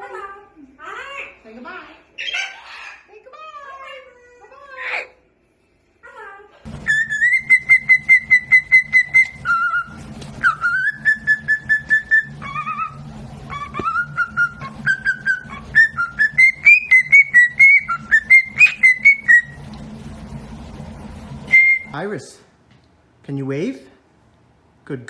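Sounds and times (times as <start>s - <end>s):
parrot whistling: 2.2s - 3.1s, 6.8s - 19.6s, 21.5s - 22.0s.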